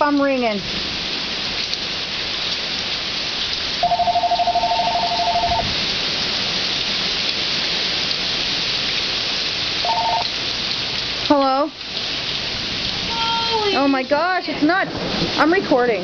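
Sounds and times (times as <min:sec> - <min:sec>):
heavy rain hissing: 0:00.0 - 0:16.0
phone ringing two-tone: 0:03.8 - 0:05.7, 0:09.8 - 0:10.3.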